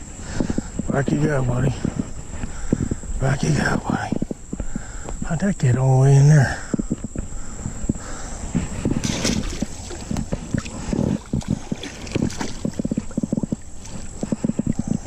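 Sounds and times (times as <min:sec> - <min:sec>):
water splashing and sloshing: 0:08.6 - 0:15.0.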